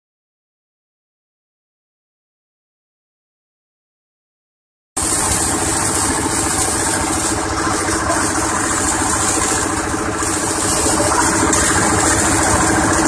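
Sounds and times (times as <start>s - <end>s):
grinding machine engine running: 5.0s - 13.0s.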